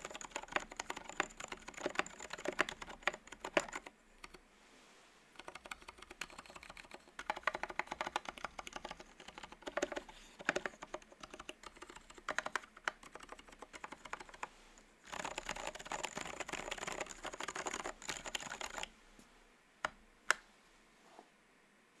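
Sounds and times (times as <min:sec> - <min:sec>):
typing on mechanical keyboard: 0:00.0 - 0:04.4, 0:05.4 - 0:14.5, 0:15.1 - 0:18.9.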